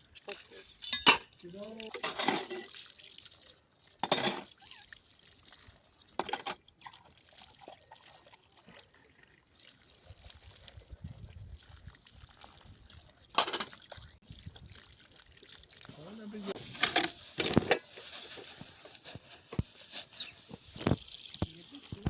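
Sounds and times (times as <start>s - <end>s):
water splashing: 19.7s - 22.0s.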